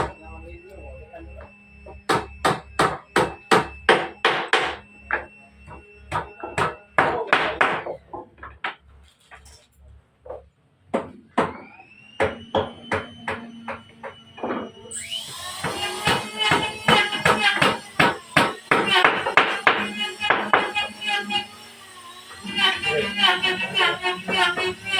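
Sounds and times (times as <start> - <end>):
hammer blows on wood: 15.6 - 21.4.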